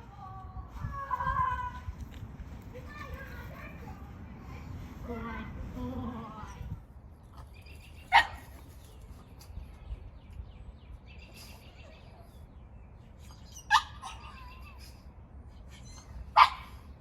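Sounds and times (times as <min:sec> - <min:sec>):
dog barking: 0:16.4 - 0:16.8.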